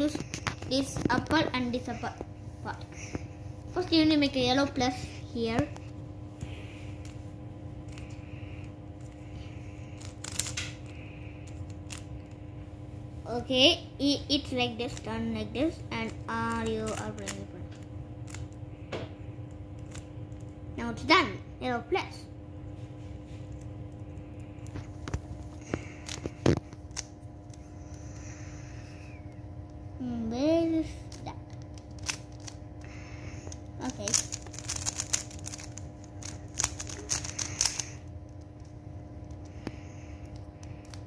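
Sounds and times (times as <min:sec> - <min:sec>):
steady background hum: 0:00.0 - 0:41.0
rubik's cube plastic clicks: 0:10.0 - 0:10.8, 0:11.5 - 0:12.1, 0:19.8 - 0:20.5, 0:31.5 - 0:32.6, 0:33.5 - 0:38.4.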